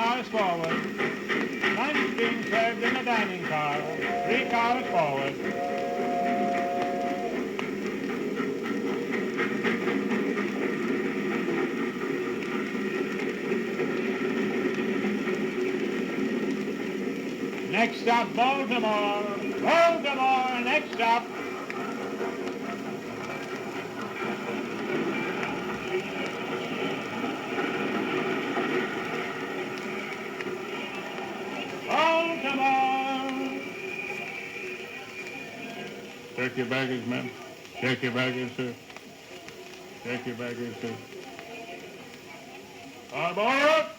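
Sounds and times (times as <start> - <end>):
train rumbling on track: 0.0 - 39.0
record surface noise: 0.0 - 43.9
train whistle blasts: 3.8 - 7.7.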